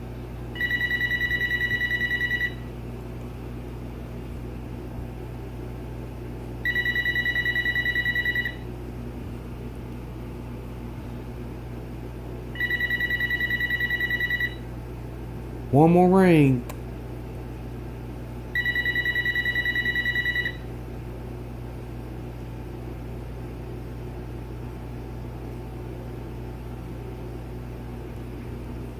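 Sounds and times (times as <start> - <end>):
faint steady hum: 0.0 - 28.9
cordless phone ringing: 0.6 - 2.6, 6.6 - 8.6, 12.6 - 14.6, 18.6 - 20.6.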